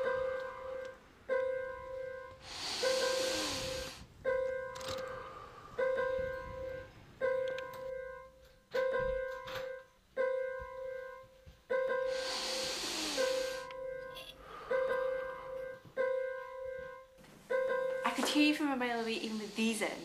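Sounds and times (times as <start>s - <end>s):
hissing breath through nose: 2.4s - 4.1s, 12.0s - 13.8s, 19.0s - 20.0s.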